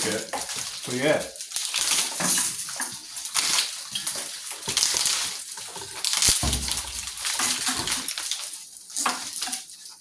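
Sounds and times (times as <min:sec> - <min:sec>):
rustling and scraping of wire insulation: 0:00.0 - 0:10.0
sharp knock: 0:06.3 - 0:07.0.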